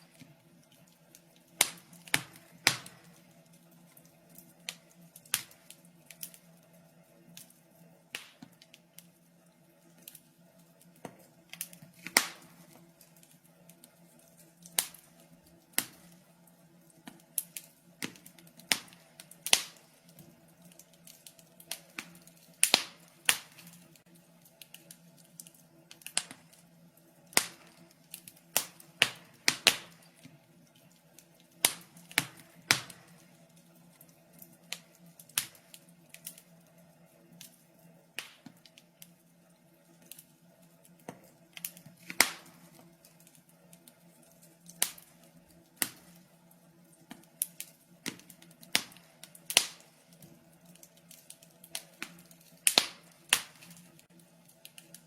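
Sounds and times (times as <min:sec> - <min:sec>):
faint steady hum: 0:00.0 - 0:55.0
fireplace fire crackling: 0:00.0 - 0:55.0.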